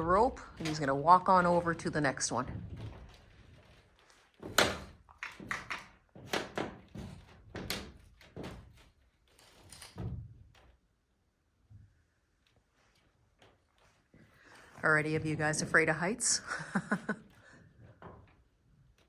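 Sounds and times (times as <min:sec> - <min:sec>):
footsteps thumping on roof: 0:00.0 - 0:09.0.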